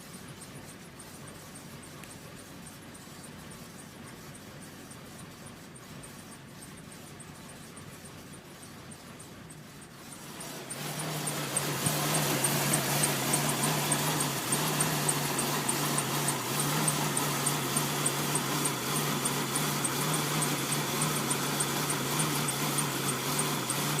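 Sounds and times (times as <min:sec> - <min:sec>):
engine idling rough: 0:00.0 - 0:24.0
squeaky fan belt chirping: 0:00.0 - 0:24.0.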